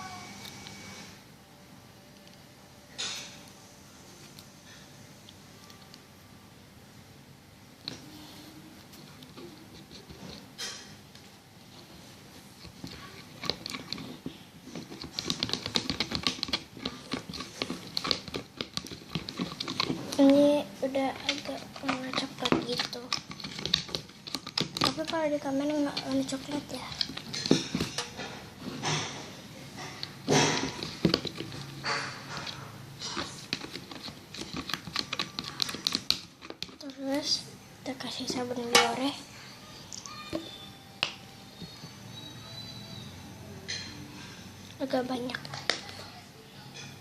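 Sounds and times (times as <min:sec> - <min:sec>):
spoon stirring slime: 0:07.8 - 0:11.0, 0:11.6 - 0:28.9, 0:29.8 - 0:39.2.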